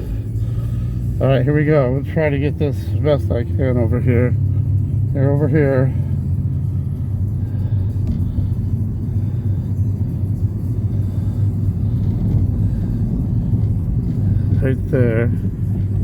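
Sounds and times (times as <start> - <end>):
heavy machinery engine rumble: 0.0 - 16.0.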